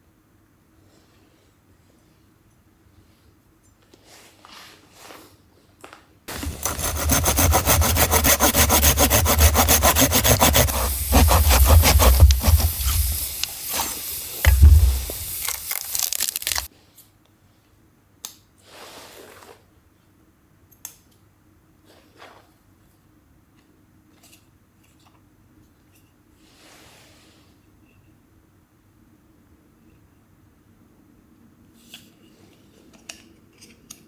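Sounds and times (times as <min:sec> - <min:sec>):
hand saw cutting wood: 0:06.3 - 0:16.7.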